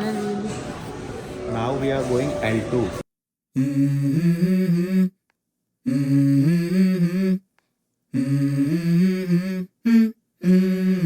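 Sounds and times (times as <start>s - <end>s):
low voice humming a melody: 3.6s - 5.2s, 5.8s - 7.4s, 8.1s - 11.0s.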